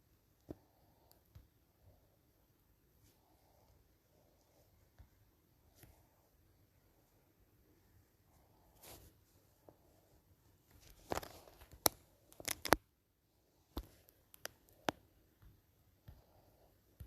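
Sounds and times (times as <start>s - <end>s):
sharp clicks and taps: 13.8s - 16.2s.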